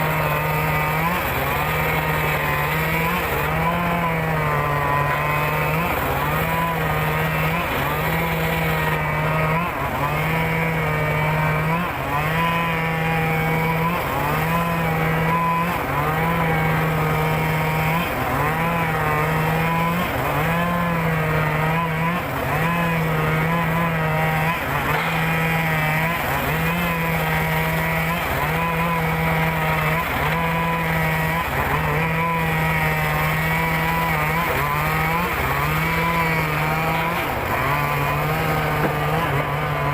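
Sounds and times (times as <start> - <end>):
circular saw cutting wood: 0.0 - 39.9.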